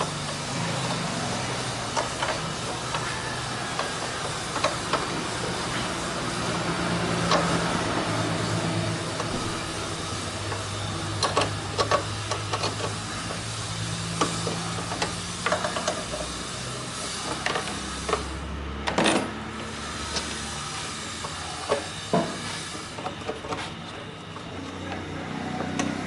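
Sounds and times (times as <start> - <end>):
engine humming: 0.0 - 26.0
sharp clicks and knocks: 3.7 - 5.9, 7.2 - 7.7, 10.5 - 13.5.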